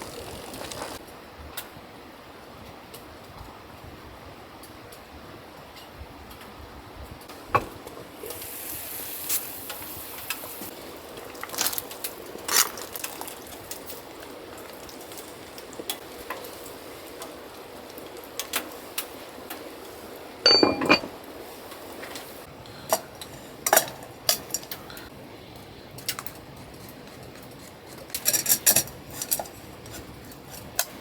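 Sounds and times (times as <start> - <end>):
metallic clinks: 20.5 - 21.1
cookware clicks and knocks: 20.5 - 21.2.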